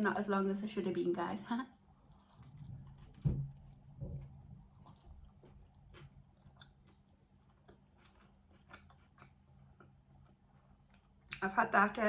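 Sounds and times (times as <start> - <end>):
faint chewing of sandwich: 1.8 - 11.4.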